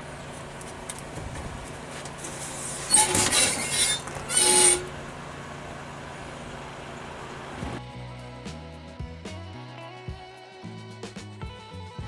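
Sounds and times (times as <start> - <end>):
tape screeching off roll: 1.9 - 5.2.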